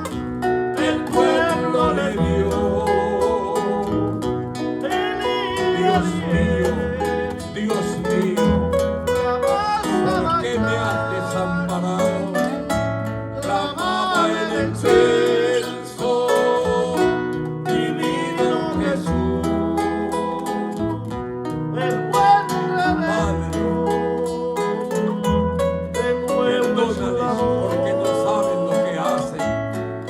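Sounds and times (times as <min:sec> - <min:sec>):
person singing: 0:00.0 - 0:12.8, 0:13.4 - 0:21.0, 0:21.7 - 0:29.6
plucked string instruments: 0:00.0 - 0:30.0.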